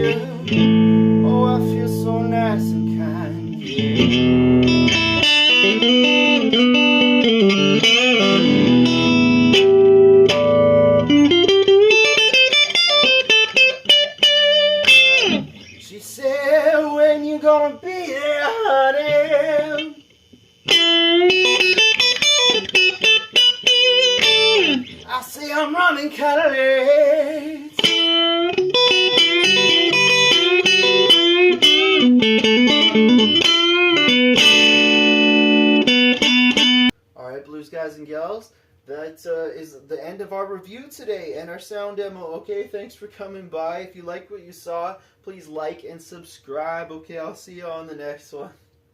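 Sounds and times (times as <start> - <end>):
electric guitar blues lead: 0.0 - 36.9.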